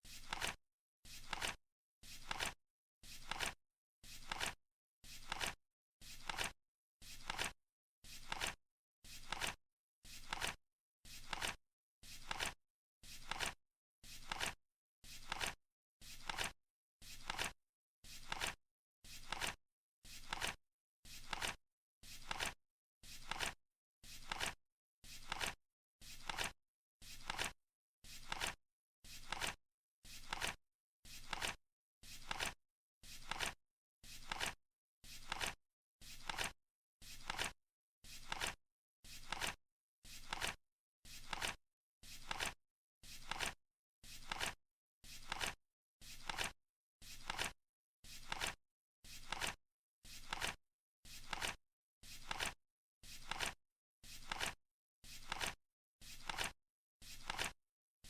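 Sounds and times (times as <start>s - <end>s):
flip-clock card flapping: 0.1s - 7.6s, 8.2s - 12.6s, 13.2s - 14.6s, 15.2s - 17.6s, 18.2s - 18.6s, 19.2s - 22.6s, 23.2s - 24.6s, 25.2s - 27.6s, 28.2s - 28.6s, 29.2s - 30.6s, 31.2s - 31.6s, 32.2s - 32.6s, 33.2s - 34.6s, 35.2s - 37.6s, 38.2s - 38.6s, 39.2s - 39.6s, 40.2s - 40.6s, 41.2s - 42.6s, 43.2s - 44.6s, 45.2s - 47.6s, 48.2s - 48.6s, 49.2s - 49.6s, 50.2s - 50.6s, 51.2s - 51.6s, 52.2s - 52.6s, 53.2s - 53.6s, 54.2s - 54.6s, 55.2s - 57.6s.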